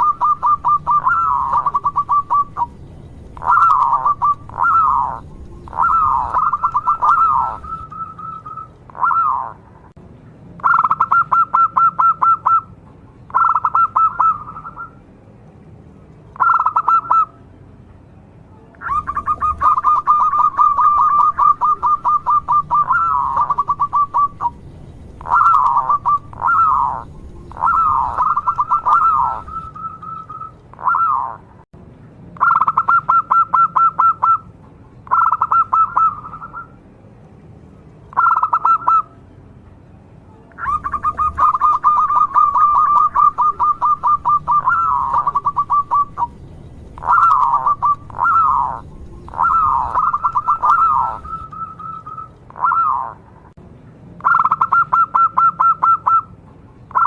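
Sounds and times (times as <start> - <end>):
dove cooing: 0.0 - 9.6, 10.6 - 12.7, 13.3 - 15.0, 16.4 - 17.3, 18.8 - 31.4, 35.1 - 36.7, 38.1 - 39.1, 40.6 - 53.2.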